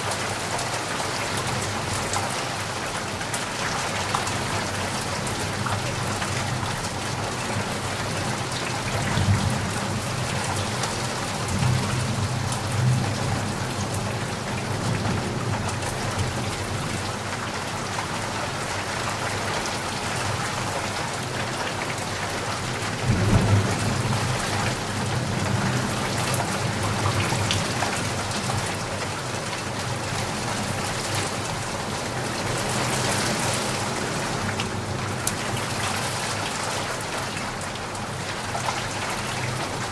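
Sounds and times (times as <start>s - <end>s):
steady rain hissing: 0.0s - 39.9s.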